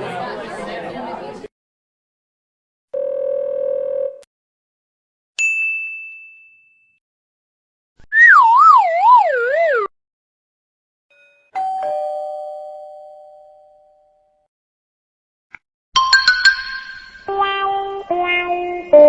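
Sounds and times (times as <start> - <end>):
cartoon whistle wobbling down: 8.0 - 9.9
two-note doorbell chime: 11.1 - 14.4.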